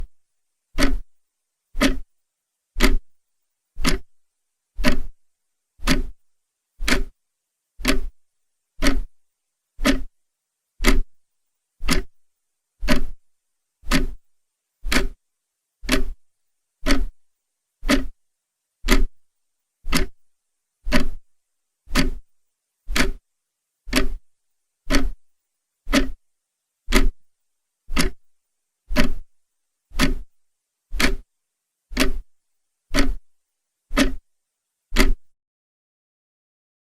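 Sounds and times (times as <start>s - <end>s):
clock ticking: 0.8s - 1.1s, 1.8s - 2.1s, 2.8s - 3.1s, 3.8s - 4.2s, 4.8s - 5.2s, 5.8s - 6.2s, 6.8s - 7.2s, 7.8s - 8.2s, 8.8s - 9.2s, 9.8s - 10.2s, 10.8s - 11.2s, 11.8s - 12.2s, 12.8s - 13.2s, 13.8s - 14.2s, 14.8s - 15.2s, 15.8s - 16.2s, 16.8s - 17.2s, 17.8s - 18.2s, 18.9s - 19.2s, 19.9s - 20.3s, 20.9s - 21.3s, 21.9s - 22.3s, 22.9s - 23.2s, 23.9s - 24.3s, 24.9s - 25.2s, 25.9s - 26.2s, 26.9s - 27.3s, 27.9s - 28.3s, 28.9s - 29.3s, 29.9s - 31.3s, 31.9s - 32.3s, 32.9s - 33.3s, 33.9s - 34.3s, 34.9s - 35.3s.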